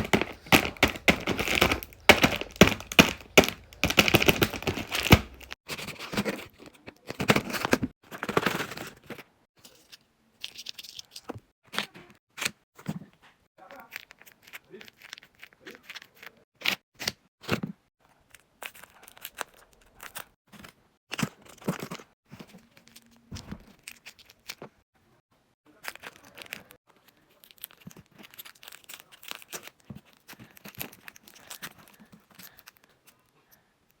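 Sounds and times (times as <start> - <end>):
packaging tearing and crinkling: 0.0 - 9.1.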